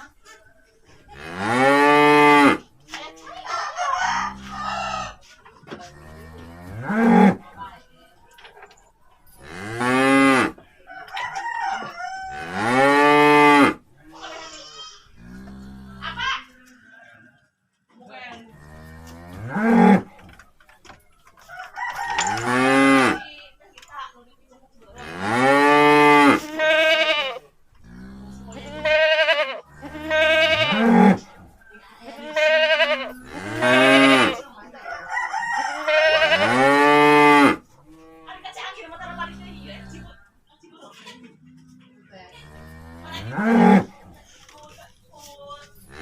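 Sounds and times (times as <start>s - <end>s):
calf mooing: 14.6s - 16.5s, 25.0s - 31.3s, 32.1s - 34.4s, 35.8s - 40.2s.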